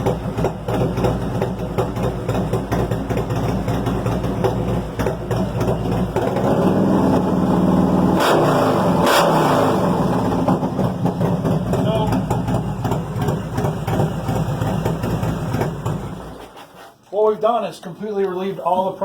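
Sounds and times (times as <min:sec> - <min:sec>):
motorcycle engine idling: 0:00.0 - 0:08.2, 0:09.7 - 0:16.5
motorcycle throttle bursts: 0:00.1 - 0:16.5.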